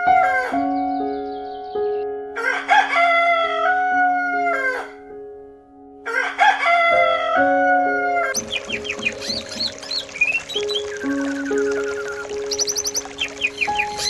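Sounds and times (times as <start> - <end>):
rooster crowing: 0.0 - 0.6, 2.4 - 5.0, 6.1 - 8.6
soft background music: 0.0 - 14.0.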